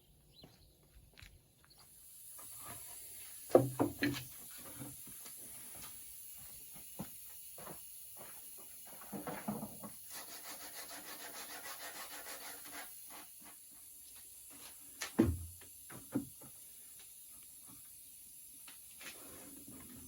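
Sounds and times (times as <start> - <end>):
rubbing strokes on wood: 2.3 - 14.8
sharp wooden knocks: 3.5 - 4.2.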